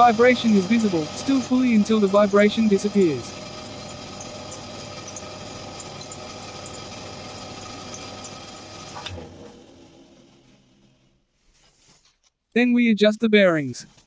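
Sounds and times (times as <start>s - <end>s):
band saw running: 0.0s - 11.1s.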